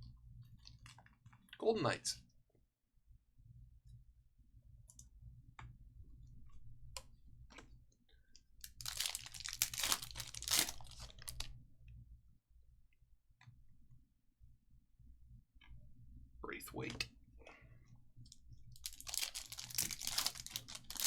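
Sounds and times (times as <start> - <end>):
wrapper crinkling and tearing: 8.6 - 11.5, 18.7 - 21.0.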